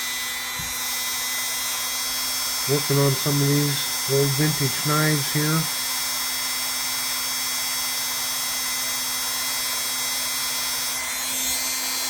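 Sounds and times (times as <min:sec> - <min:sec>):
rotary power tool whining: 0:00.0 - 0:12.0.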